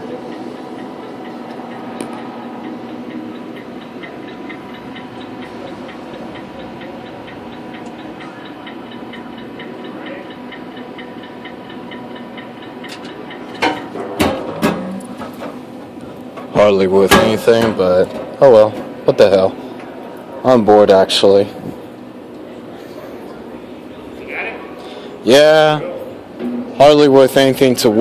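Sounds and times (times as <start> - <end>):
arcade machine ticking: 0.0 - 19.7
hum and tones of arcade machines: 0.0 - 28.0.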